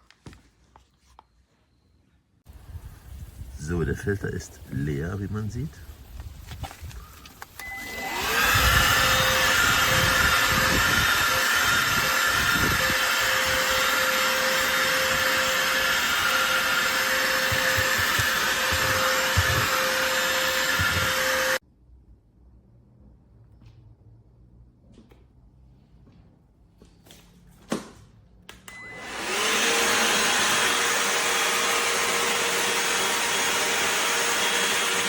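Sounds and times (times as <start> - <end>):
handheld vacuum running: 7.4 - 21.6, 28.8 - 35.0.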